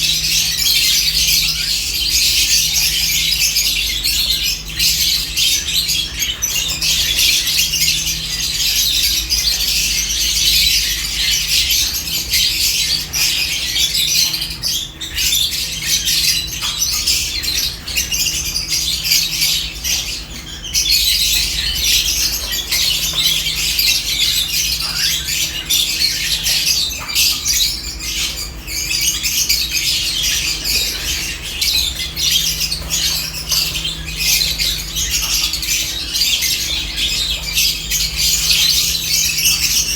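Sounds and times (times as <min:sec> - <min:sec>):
flock of birds chattering: 0:00.0 - 0:39.9.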